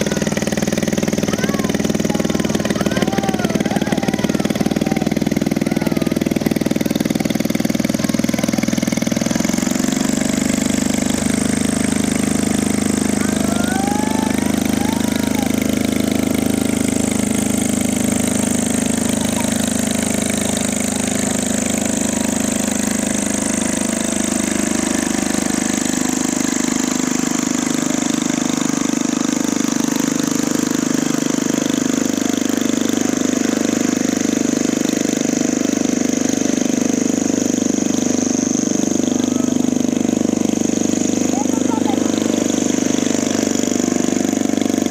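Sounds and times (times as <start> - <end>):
ultralight aircraft engine running: 0.0 - 44.9.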